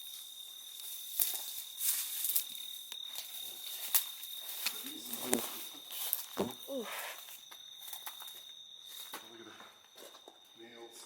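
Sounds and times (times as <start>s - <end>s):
crickets chirring: 0.0s - 11.0s
footstep-like clicks and crunches: 0.7s - 6.6s.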